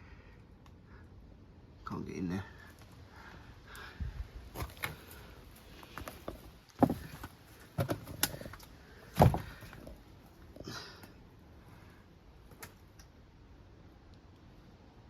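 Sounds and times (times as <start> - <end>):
sharp knocks and thuds: 6.0 - 9.9.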